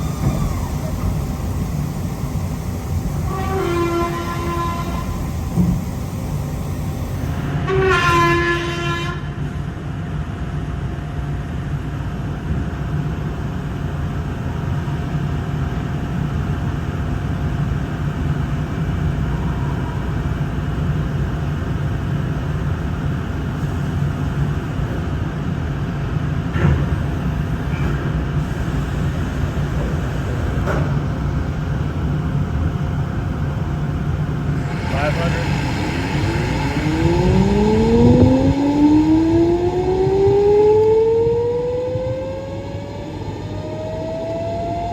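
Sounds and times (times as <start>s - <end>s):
industrial machinery humming: 0.0s - 8.2s, 25.5s - 44.9s
multi-pitch horn tone: 0.0s - 9.4s.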